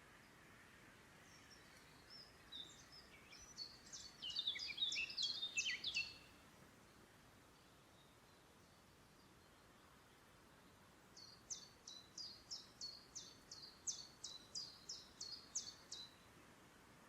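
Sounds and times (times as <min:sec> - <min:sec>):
faint background hiss: 0:00.0 - 0:17.0
songbird singing high notes: 0:02.1 - 0:06.3.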